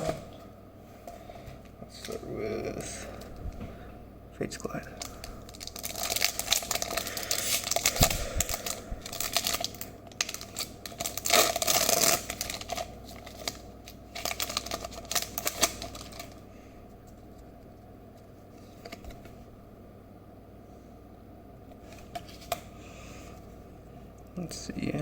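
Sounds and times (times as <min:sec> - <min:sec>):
foil wrapper tearing and crinkling: 0:05.0 - 0:16.4.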